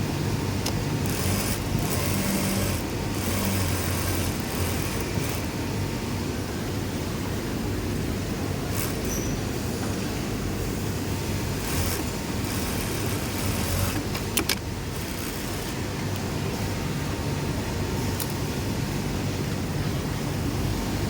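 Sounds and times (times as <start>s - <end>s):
sewing machines humming: 0.9s - 5.7s, 8.6s - 9.6s, 11.1s - 16.6s.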